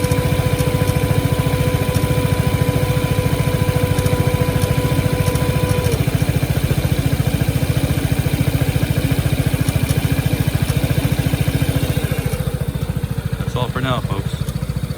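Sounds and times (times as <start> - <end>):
scooter engine idling: 0.0 - 14.9
steady whine: 11.7 - 14.9.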